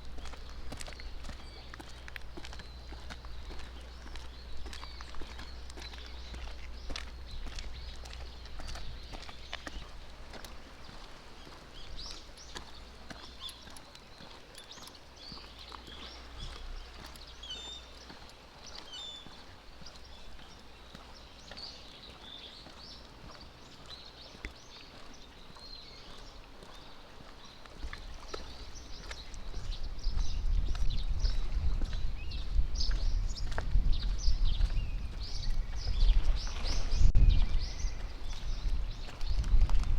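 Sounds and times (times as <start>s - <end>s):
low wind rumble: 0.0s - 13.0s, 28.0s - 39.9s
footsteps of person and dog: 0.0s - 39.9s
small birds chirping: 0.0s - 39.9s.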